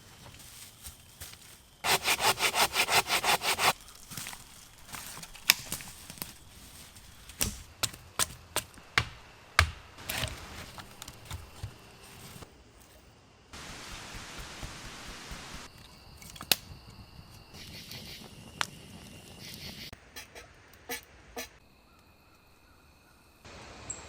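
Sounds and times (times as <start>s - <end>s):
hand saw cutting wood: 1.8s - 3.9s.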